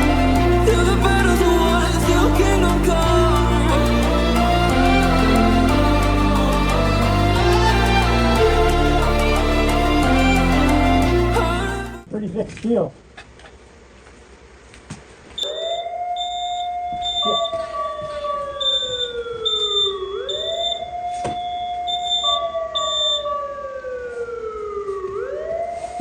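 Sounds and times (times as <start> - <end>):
wailing alarm siren: 0.0 - 11.8, 15.4 - 26.0
high-pitched beeps: 15.4 - 17.7, 18.6 - 23.3.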